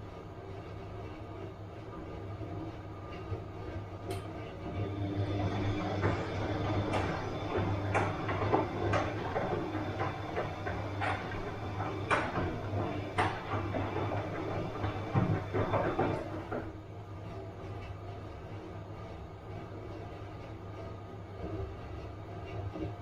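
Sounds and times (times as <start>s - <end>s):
washing machine motor hum: 0.0s - 23.0s
drum knocking and clunking: 5.2s - 16.8s.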